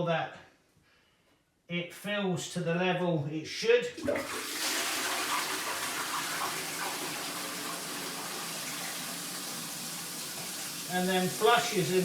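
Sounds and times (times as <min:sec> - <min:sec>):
toilet cistern filling with water: 0:04.0 - 0:12.0.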